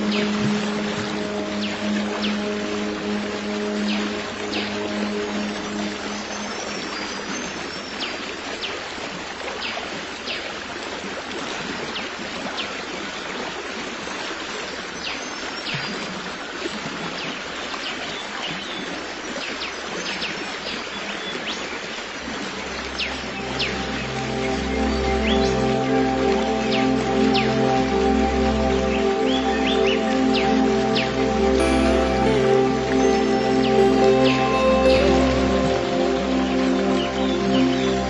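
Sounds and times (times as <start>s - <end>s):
stream rushing: 0.0s - 15.3s, 20.3s - 38.0s
high chirps: 30.9s - 38.0s.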